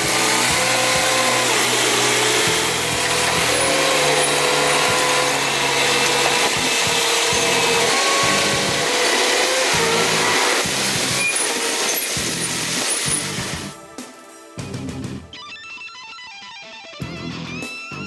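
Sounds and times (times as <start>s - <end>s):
loud machine noise with whine: 0.0s - 13.9s.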